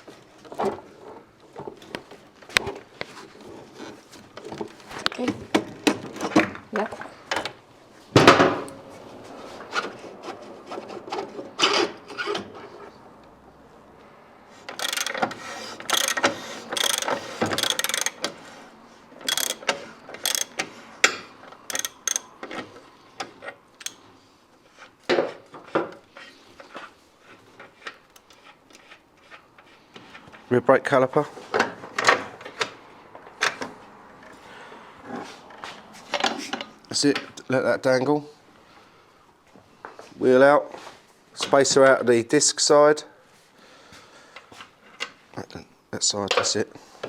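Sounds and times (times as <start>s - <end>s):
tools and metal parts clattering: 14.6s - 18.4s, 19.2s - 24.1s
hand ratchet clicking: 14.7s - 18.4s, 19.2s - 22.5s, 23.8s - 24.0s.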